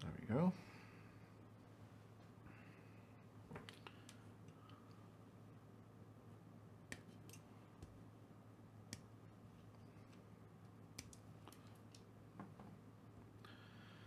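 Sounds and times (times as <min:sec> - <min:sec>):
faint clicks of small parts: 0:03.5 - 0:05.0, 0:06.9 - 0:08.0, 0:08.9 - 0:12.7.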